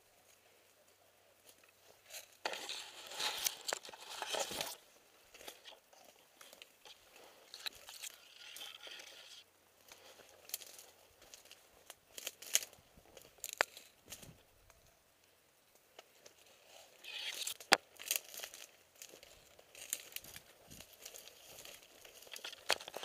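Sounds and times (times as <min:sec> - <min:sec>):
rustling and crunching of movement: 0:00.0 - 0:23.0.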